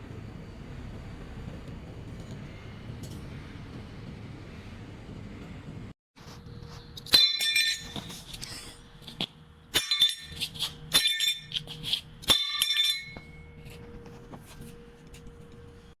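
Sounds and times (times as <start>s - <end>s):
steel parts clanking: 7.0s - 13.8s.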